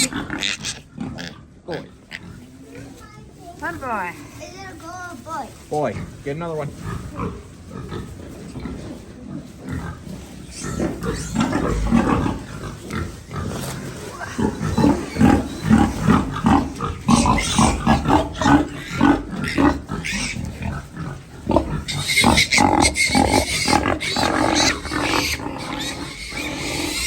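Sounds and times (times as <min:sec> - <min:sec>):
piglets squealing and grunting: 0:00.0 - 0:03.0, 0:09.6 - 0:27.0.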